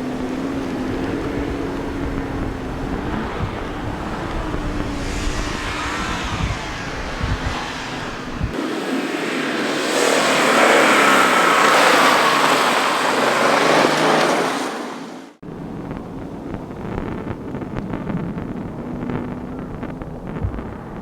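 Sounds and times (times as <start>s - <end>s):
wind on microphone: 0.0s - 12.8s, 15.4s - 21.0s
rally car engine revving: 0.0s - 15.1s.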